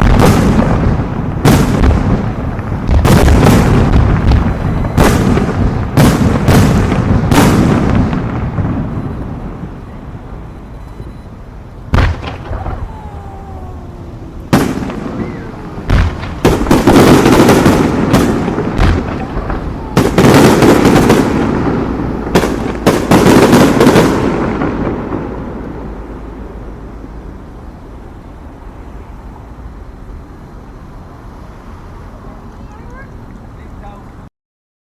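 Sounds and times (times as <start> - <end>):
fireworks booms and crackling: 0.0 - 10.5, 11.7 - 27.6
distant fireworks rumble: 0.0 - 34.3.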